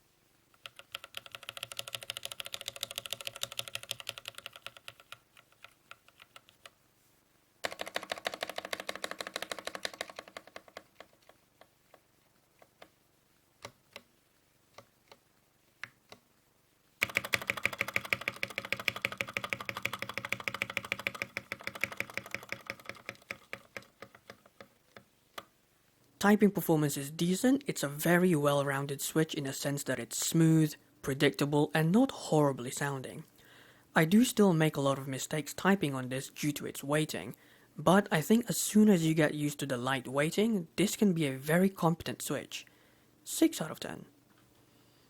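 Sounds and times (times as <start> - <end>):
typing on mechanical keyboard: 0.6 - 6.8, 7.6 - 13.0, 17.0 - 25.1.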